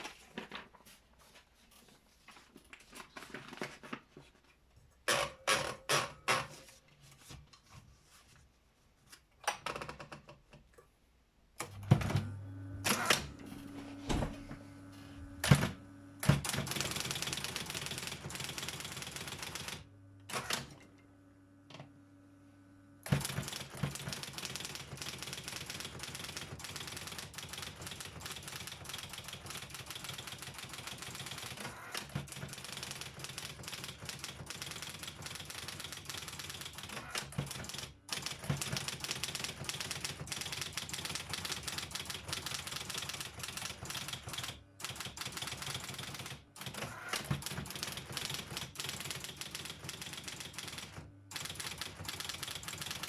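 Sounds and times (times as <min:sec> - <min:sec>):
typewriter motor hum: 0:11.6 - 0:21.0, 0:23.0 - 0:53.0.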